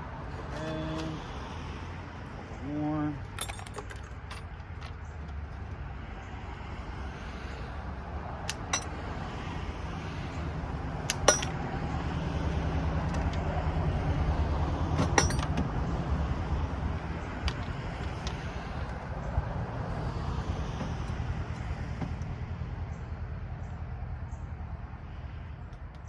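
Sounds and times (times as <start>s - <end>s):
metal scrap clinking: 3.3s - 4.5s, 8.5s - 8.9s, 11.1s - 11.6s, 15.0s - 15.5s.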